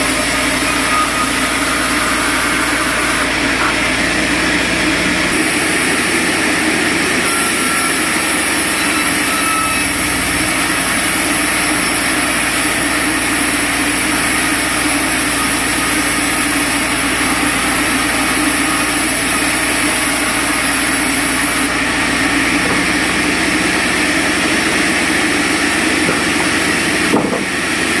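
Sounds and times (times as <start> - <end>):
sawmill machinery drone: 0.0 - 28.0.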